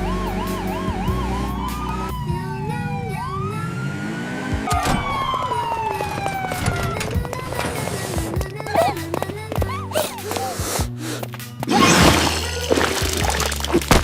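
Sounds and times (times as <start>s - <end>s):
police siren wailing: 0.0s - 8.2s
long falling tone: 0.6s - 7.3s.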